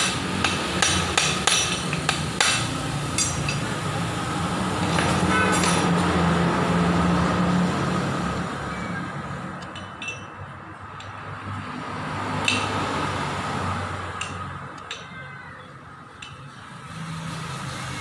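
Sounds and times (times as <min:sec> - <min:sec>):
sharp metallic clinks: 0:14.2 - 0:15.3.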